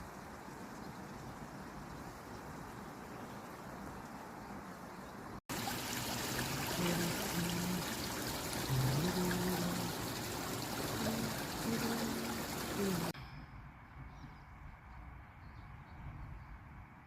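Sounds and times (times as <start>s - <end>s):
stream water rushing: 5.5s - 13.2s.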